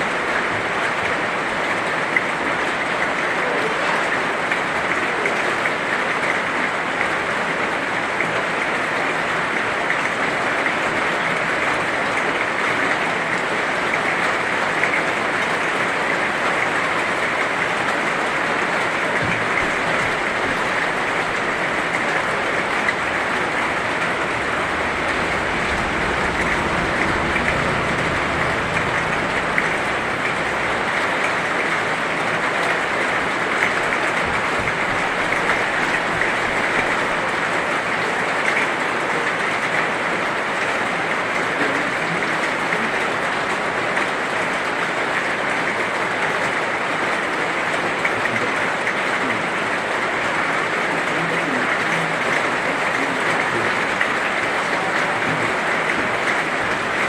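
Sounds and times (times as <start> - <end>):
heavy rain: 0.0 - 57.0
low rumble: 22.2 - 31.5.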